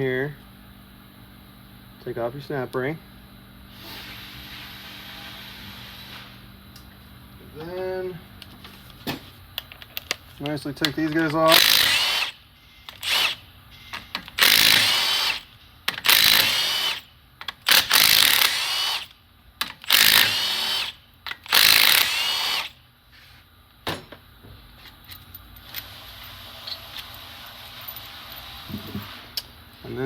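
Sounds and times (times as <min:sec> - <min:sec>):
power tool spinning bolts: 0:10.8 - 0:13.4, 0:14.0 - 0:22.8.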